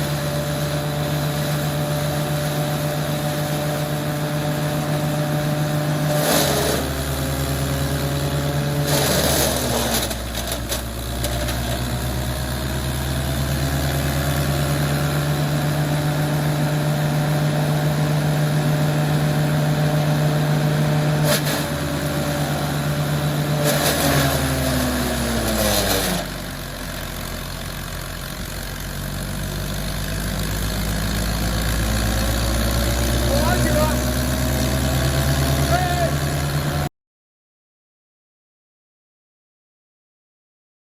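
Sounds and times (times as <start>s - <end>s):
wood crusher machine humming: 0.0s - 36.9s
loud crushing bursts: 5.4s - 15.5s, 18.8s - 27.5s.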